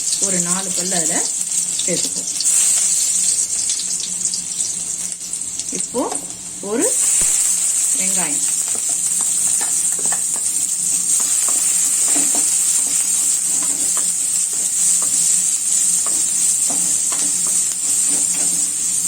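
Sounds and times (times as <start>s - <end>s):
onion sizzling in hot oil: 0.0s - 19.0s
spatula scraping a pan: 8.7s - 19.0s.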